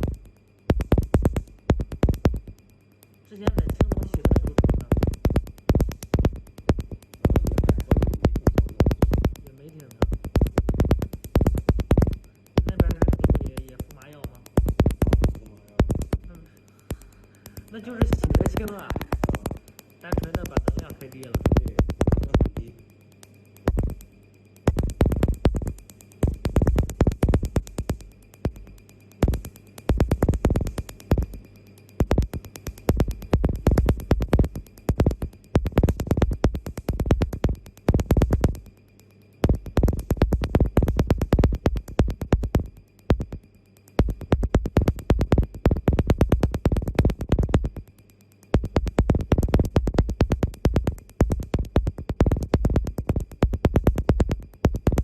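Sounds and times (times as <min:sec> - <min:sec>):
faint machine hum: 0:00.0 - 0:55.0
laser snapping pulses: 0:03.4 - 0:24.1, 0:24.7 - 0:38.7.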